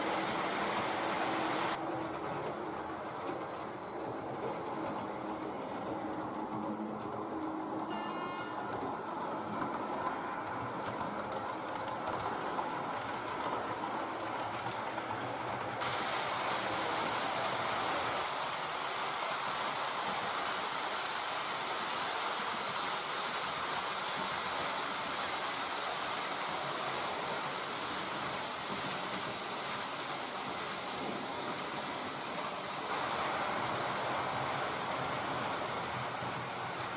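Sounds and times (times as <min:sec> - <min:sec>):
model train whirring on track: 0:00.0 - 0:36.9.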